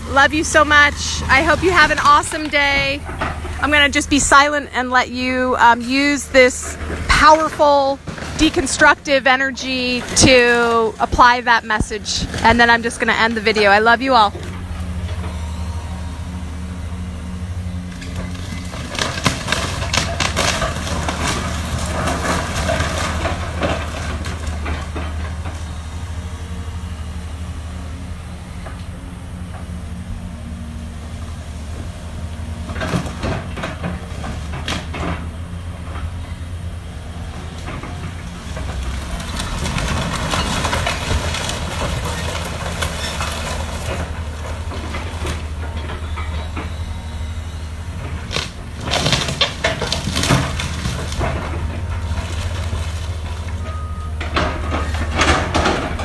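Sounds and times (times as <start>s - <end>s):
heavy machine engine running: 0.0s - 56.0s
debris crunching and clattering: 17.8s - 25.8s, 37.6s - 56.0s.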